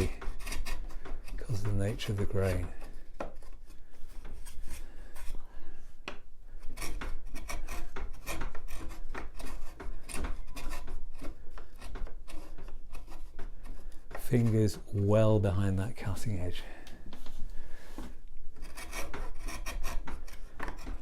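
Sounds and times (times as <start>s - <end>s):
chisel paring wood: 0.0s - 5.3s, 6.0s - 15.0s, 18.5s - 21.0s.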